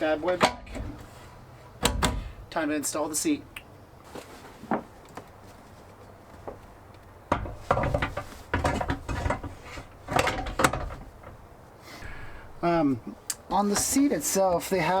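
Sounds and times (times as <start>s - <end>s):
seat clunking and scraping on metal: 0.1s - 2.4s, 7.3s - 11.5s.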